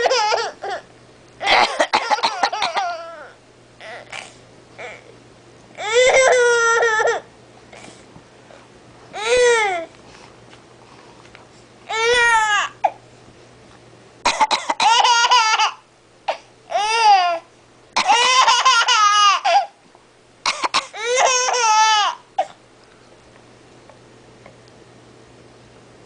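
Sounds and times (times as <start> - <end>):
baby laughing: 0.0 - 0.8, 14.8 - 15.8, 18.1 - 19.7
adult fake coughs: 1.4 - 2.8, 14.2 - 15.2, 20.4 - 21.0.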